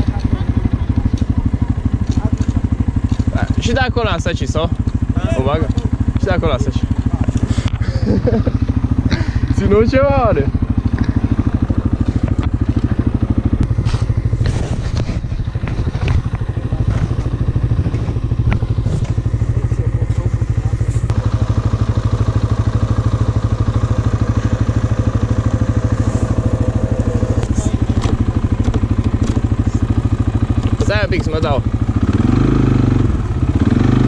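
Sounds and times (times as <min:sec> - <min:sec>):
atv engine running: 0:00.0 - 0:34.0
engine whine under load: 0:02.8 - 0:34.0
knocks and clatters: 0:10.8 - 0:20.3, 0:26.4 - 0:29.6.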